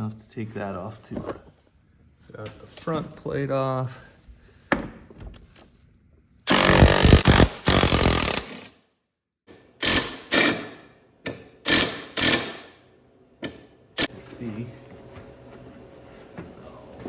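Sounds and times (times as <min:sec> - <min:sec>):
handheld power tool running: 0:06.5 - 0:08.7, 0:09.8 - 0:10.6, 0:11.7 - 0:12.6.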